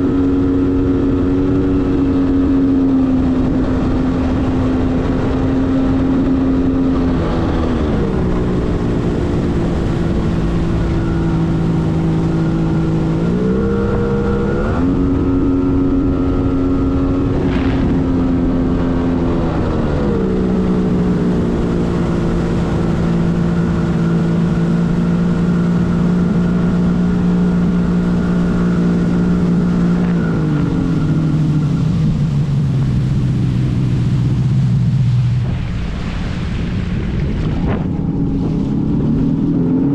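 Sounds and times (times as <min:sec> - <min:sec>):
water and wind noise: 0:00.0 - 0:39.9
watercraft engine running: 0:00.0 - 0:39.9.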